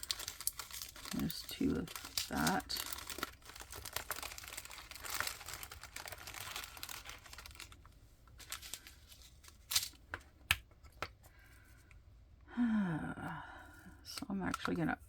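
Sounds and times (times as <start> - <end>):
plastic baggie crinkling: 0.0 - 10.0.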